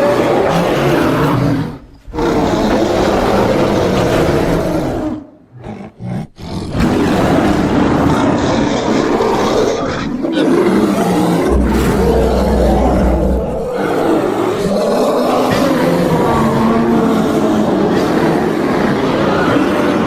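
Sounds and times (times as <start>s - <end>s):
bear grunting: 0.0s - 20.0s
polar bear roaring: 0.0s - 20.0s.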